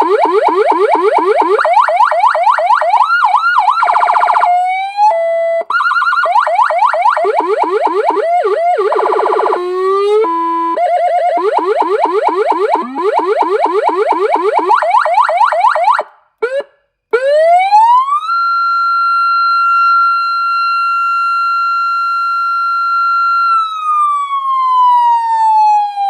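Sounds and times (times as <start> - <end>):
electronic siren cycling tones: 0.0 - 16.6.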